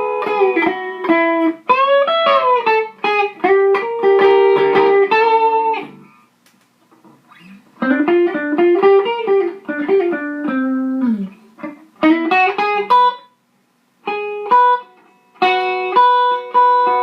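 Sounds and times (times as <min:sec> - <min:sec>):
electric guitar single notes: 0:00.0 - 0:06.3, 0:14.0 - 0:17.0.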